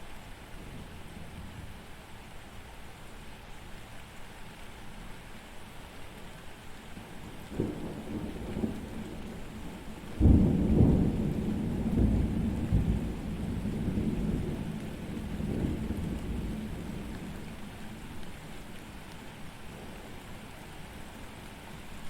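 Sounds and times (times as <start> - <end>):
steady rain: 0.0 - 22.0
loud thunderclap rumbling: 7.6 - 17.8.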